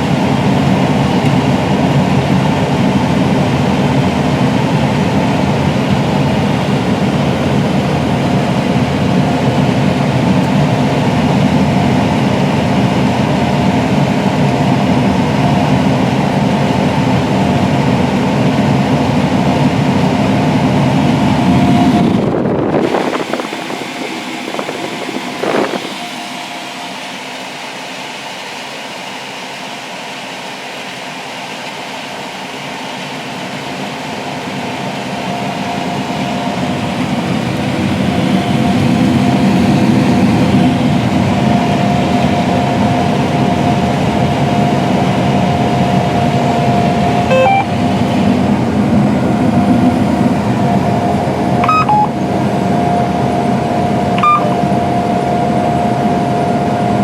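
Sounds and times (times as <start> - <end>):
combine harvester running: 0.0 - 57.0
constant machine whine: 0.0 - 57.0
short beeps: 47.3 - 47.8, 51.6 - 52.2, 54.2 - 54.7.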